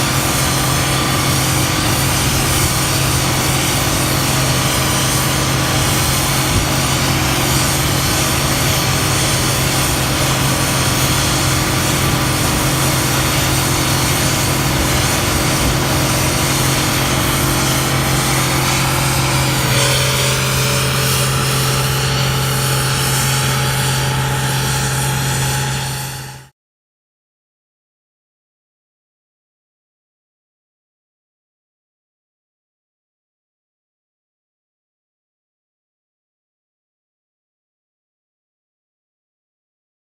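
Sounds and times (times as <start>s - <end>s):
machinery engine humming: 0.0s - 26.5s.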